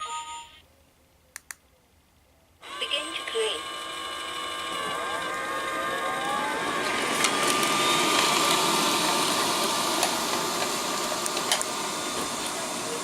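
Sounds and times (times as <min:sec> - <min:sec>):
robot vacuum whine and hum: 0:02.6 - 0:13.0.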